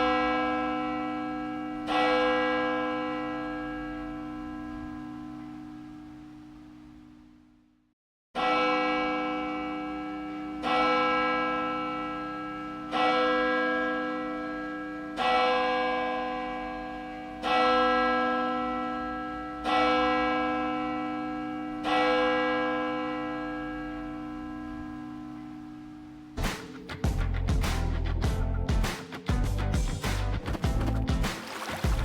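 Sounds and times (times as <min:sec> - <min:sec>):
church bell tolling: 0:00.0 - 0:06.9, 0:08.4 - 0:26.4.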